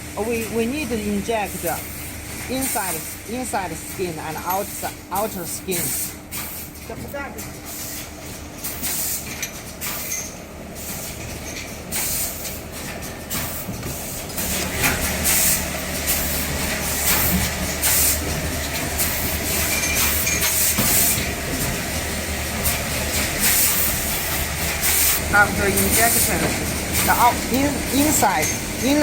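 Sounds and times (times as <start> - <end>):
machine low mechanical hum: 0.0 - 29.0.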